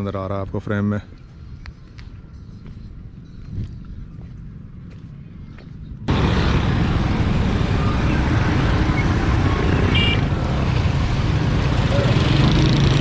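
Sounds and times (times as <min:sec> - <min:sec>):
road traffic noise: 0:00.0 - 0:13.0
wind rumble on microphone: 0:01.6 - 0:04.4.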